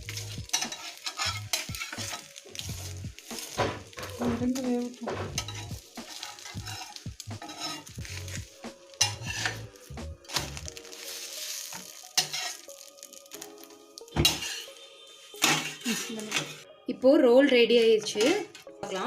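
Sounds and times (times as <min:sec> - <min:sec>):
flatbread sizzling in a pan: 0:00.0 - 0:16.7
spatula knocking and scraping pan: 0:00.5 - 0:02.7, 0:03.3 - 0:10.6, 0:14.2 - 0:14.7.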